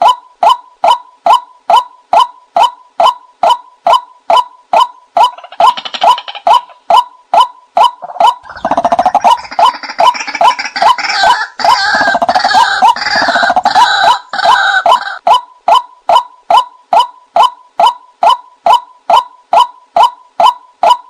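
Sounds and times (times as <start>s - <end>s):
harsh buzzy bird calling: 0.0s - 7.0s, 7.8s - 15.4s
waterhen calls: 1.3s - 19.2s.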